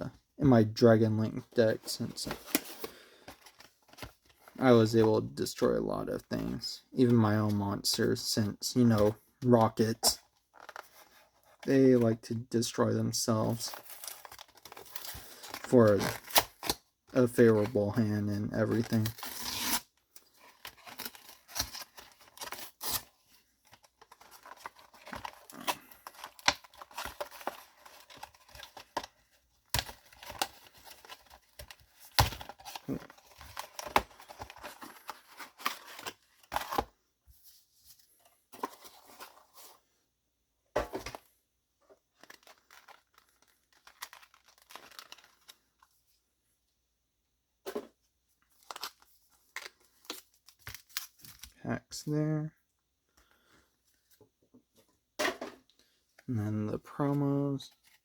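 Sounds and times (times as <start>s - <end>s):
packaging crackling and rustling: 20.3s - 36.8s, 42.1s - 45.9s.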